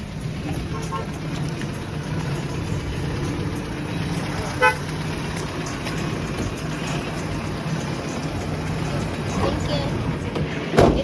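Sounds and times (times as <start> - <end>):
bus engine running: 0.0 - 11.0
vehicle horn toot: 4.6 - 4.9.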